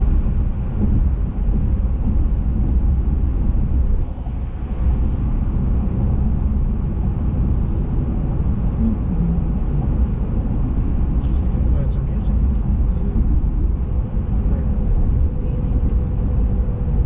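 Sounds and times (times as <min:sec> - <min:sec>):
vehicle engine and road rumble: 0:00.0 - 0:17.0.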